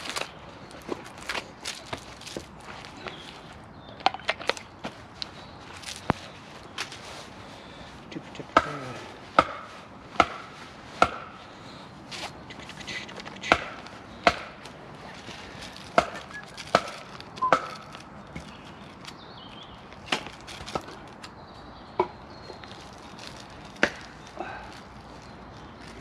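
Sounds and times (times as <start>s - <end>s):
wood being chopped: 8.5s - 11.4s, 13.4s - 14.7s, 15.9s - 18.5s, 20.0s - 21.0s, 23.8s - 24.2s.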